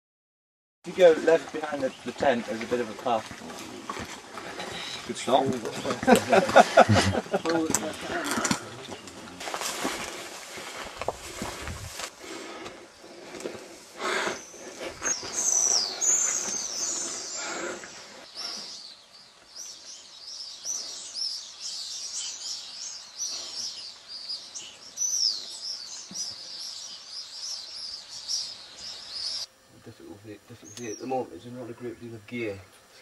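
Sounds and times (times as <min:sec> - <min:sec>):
small birds chirping: 0:01.0 - 0:03.2, 0:14.0 - 0:33.0.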